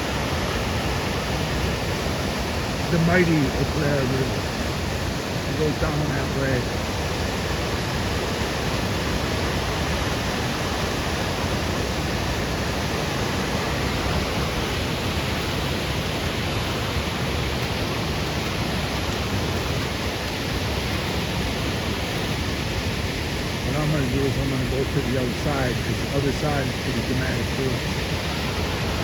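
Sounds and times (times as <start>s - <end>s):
water roaring over rocks: 0.0s - 29.0s.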